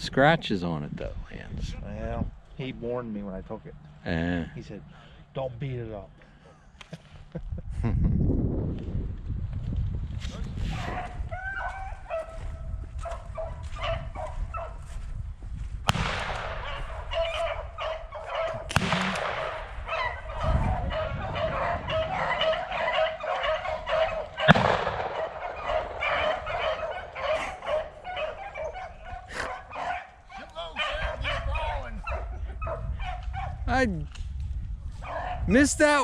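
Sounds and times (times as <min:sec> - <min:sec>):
hounds baying: 0:10.7 - 0:14.9, 0:16.3 - 0:33.6, 0:34.9 - 0:35.6
sharp bang: 0:15.9 - 0:16.8, 0:18.7 - 0:19.8, 0:24.5 - 0:26.1.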